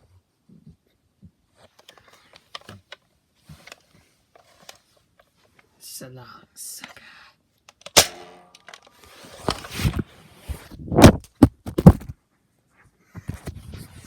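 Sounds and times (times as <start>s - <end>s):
toy dart blaster firing snap: 7.9s - 8.7s.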